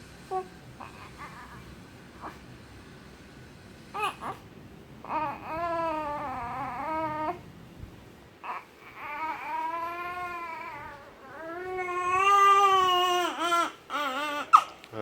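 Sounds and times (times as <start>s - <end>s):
newborn baby crying: 0.8s - 2.4s, 4.0s - 4.4s, 5.0s - 7.4s, 8.4s - 14.8s.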